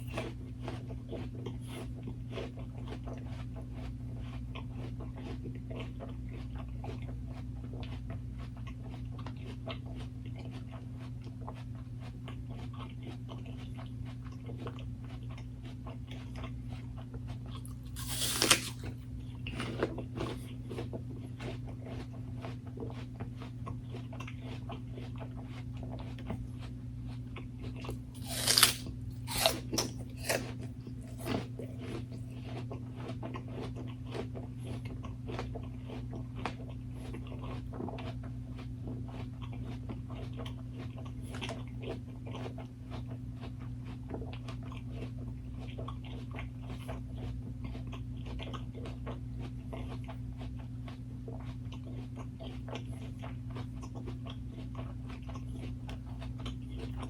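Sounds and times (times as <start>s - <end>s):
chewing with mouth clicks: 0.0s - 57.0s
crunchy bites: 17.2s - 23.1s, 27.6s - 38.2s.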